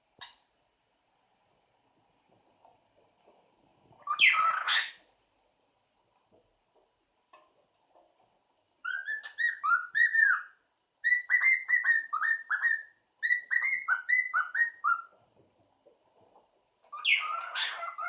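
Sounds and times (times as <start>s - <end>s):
cockatiel chick whistling: 8.8s - 15.2s, 17.0s - 18.0s.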